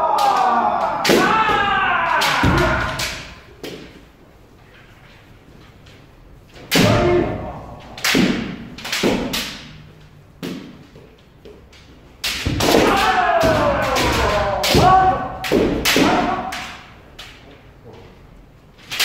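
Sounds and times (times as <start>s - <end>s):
long shout: 0.0s - 3.4s, 12.6s - 16.9s
bamboo sword strikes: 6.7s - 9.8s, 12.2s - 16.9s.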